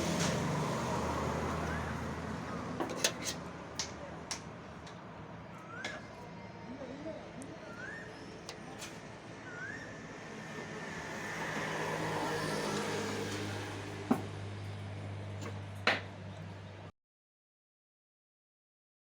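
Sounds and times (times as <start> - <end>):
vehicle passing: 0.0 - 5.1, 9.3 - 16.9.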